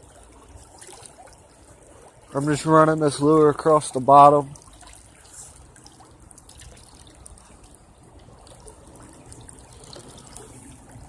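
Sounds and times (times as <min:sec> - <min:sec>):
creek water trickling: 0:00.0 - 0:11.0.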